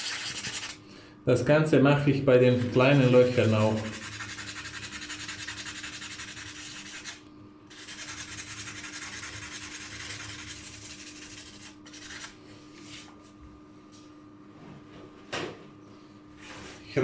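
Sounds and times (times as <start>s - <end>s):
sandpaper rasping on enamel: 0.0s - 0.8s, 2.6s - 12.3s.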